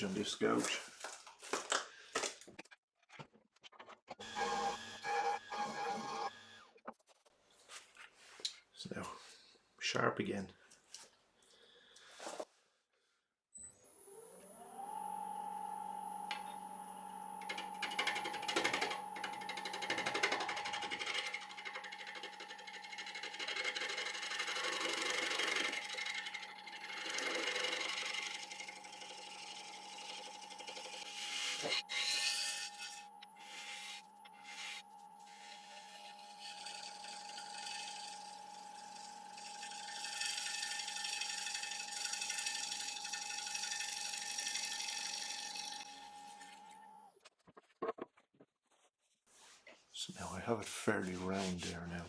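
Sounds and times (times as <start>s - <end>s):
gouge cutting wood on lathe: 4.2s - 6.7s, 15.8s - 46.8s
lathe humming: 4.2s - 6.7s, 14.7s - 47.0s.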